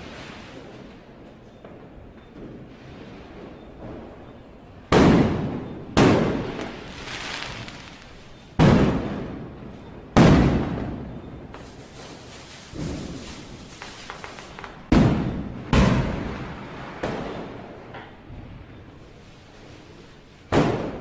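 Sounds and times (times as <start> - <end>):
firecracker bangs: 4.9 - 17.8, 20.5 - 21.0.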